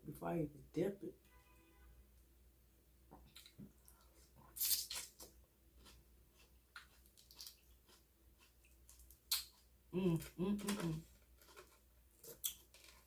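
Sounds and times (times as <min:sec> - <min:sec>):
wet chewing sounds: 0:03.1 - 0:13.0.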